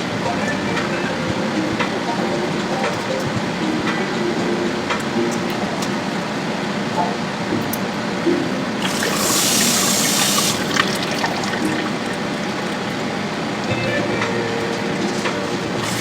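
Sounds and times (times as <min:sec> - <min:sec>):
water running from tap: 0:08.8 - 0:13.3, 0:15.7 - 0:16.0.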